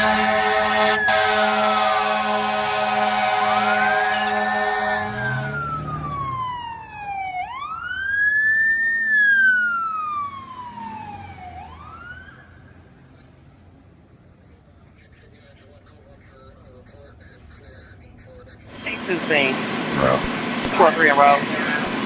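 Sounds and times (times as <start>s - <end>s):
multi-tone horn blast: 0.0s - 5.6s, 18.7s - 22.0s
fire truck siren wailing: 0.0s - 13.0s, 18.7s - 22.0s.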